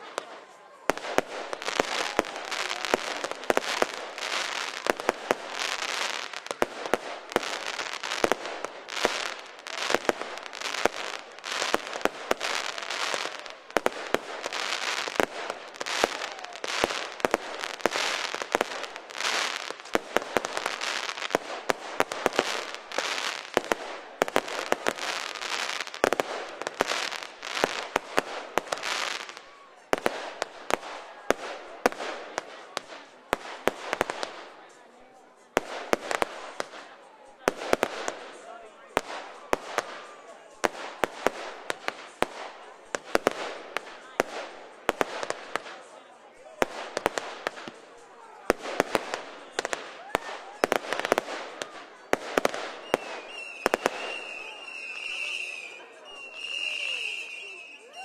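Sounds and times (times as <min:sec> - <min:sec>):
fireworks sharp bangs: 0:00.0 - 0:34.7, 0:46.5 - 0:55.7
crackling firework bursts: 0:00.0 - 0:34.8, 0:35.4 - 0:57.9.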